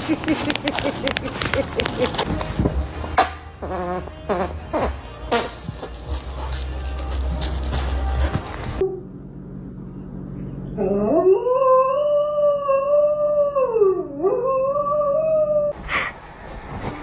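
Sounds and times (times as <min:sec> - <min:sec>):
dog howling: 0:10.8 - 0:15.8.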